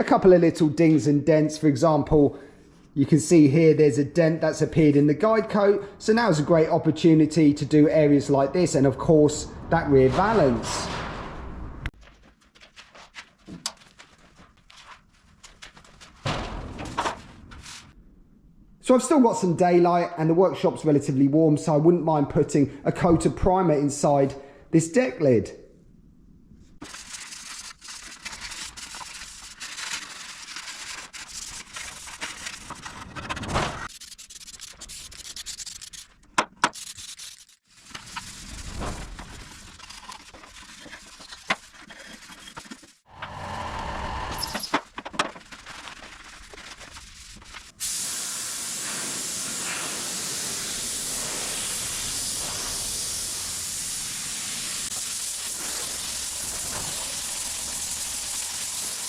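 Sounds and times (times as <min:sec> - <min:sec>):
spray paint hissing: 0:47.2 - 0:59.0.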